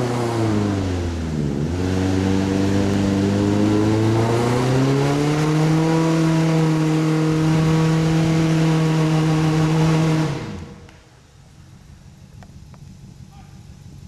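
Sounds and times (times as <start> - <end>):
off-road vehicle engine revving: 0.0 - 11.0.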